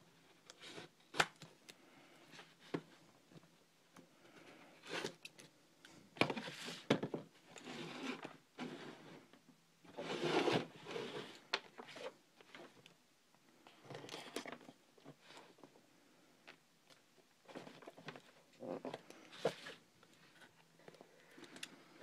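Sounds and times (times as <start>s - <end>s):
packaging rustling and scraping: 9.9s - 12.8s.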